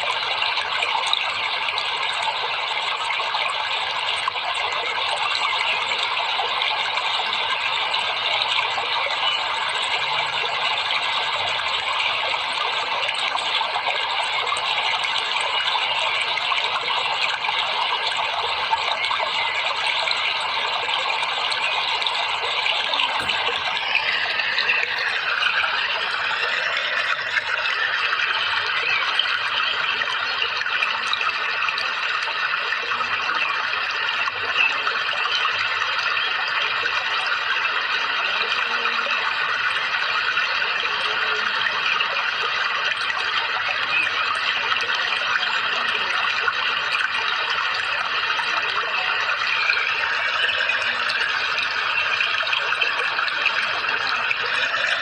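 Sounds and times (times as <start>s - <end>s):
flowing water rushing: 0.0s - 55.0s.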